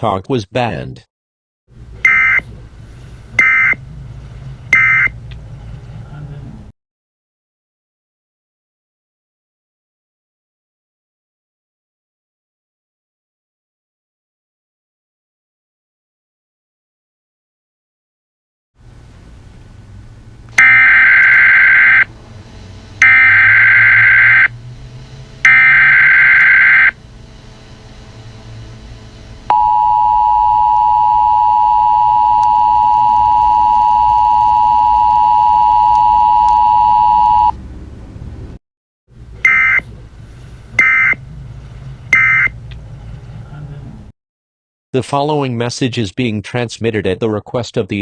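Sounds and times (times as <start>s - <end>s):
two-tone attention signal: 2.0s - 2.4s, 3.4s - 3.8s, 4.7s - 5.1s, 20.6s - 22.1s, 23.0s - 24.5s, 25.5s - 27.0s, 29.5s - 37.5s, 39.4s - 39.8s, 40.8s - 41.2s, 42.1s - 42.5s
digital header bursts: 2.1s - 2.4s, 3.4s - 3.8s, 4.8s - 5.1s, 20.6s - 22.1s, 23.0s - 24.6s, 25.4s - 27.0s, 39.4s - 39.8s, 40.8s - 41.2s
low hum: 18.8s - 44.1s.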